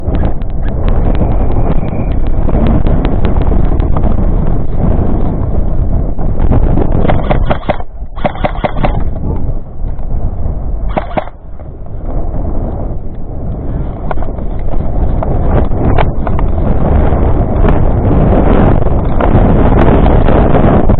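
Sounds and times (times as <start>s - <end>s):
wind buffeting microphone: 0.0s - 20.9s
sharp clicks: 7.0s - 9.2s, 10.9s - 11.4s.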